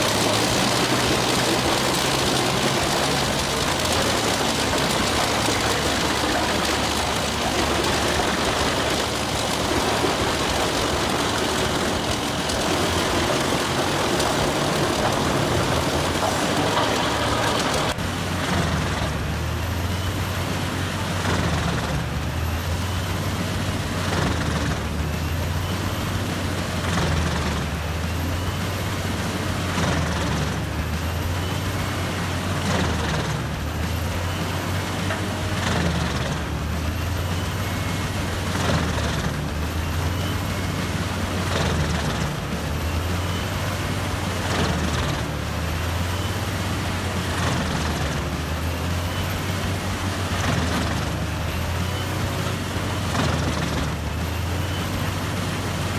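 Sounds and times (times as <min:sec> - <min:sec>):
wood chipper engine drone: 0:00.0 - 0:55.9
wood chipper noise surges: 0:00.0 - 0:55.9.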